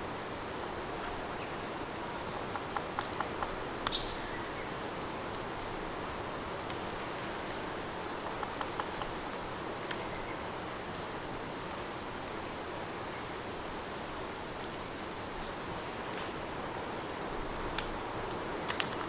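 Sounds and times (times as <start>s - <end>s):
faint clicks: 9.8s - 10.1s, 17.7s - 19.0s
steady rain: 15.0s - 19.0s.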